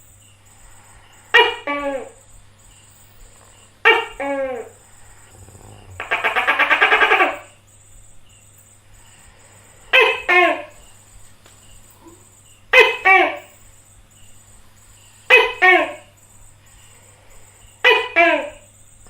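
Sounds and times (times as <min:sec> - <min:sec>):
gecko rattling call: 0:00.1 - 0:18.7
gecko calling: 0:01.3 - 0:07.7.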